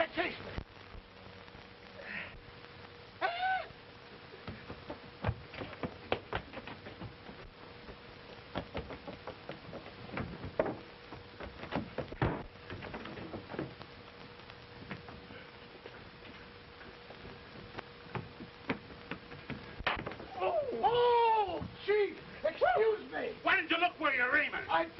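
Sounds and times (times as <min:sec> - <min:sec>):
faint steady hum and hiss: 0:00.0 - 0:24.9
irregular knocks and clicks: 0:04.4 - 0:13.9, 0:17.0 - 0:20.3.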